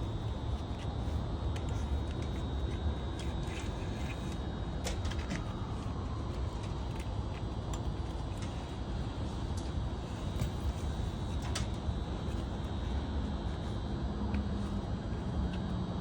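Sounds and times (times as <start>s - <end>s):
background machinery rumble: 0.0s - 16.0s.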